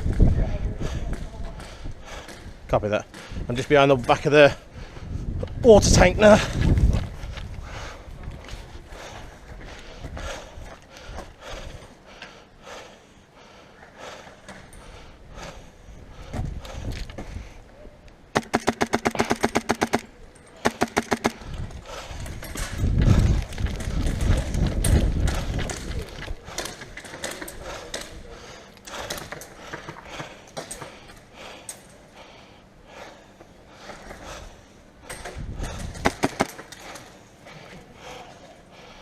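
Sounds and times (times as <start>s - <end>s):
airsoft rifle firing bursts: 18.4s - 21.4s.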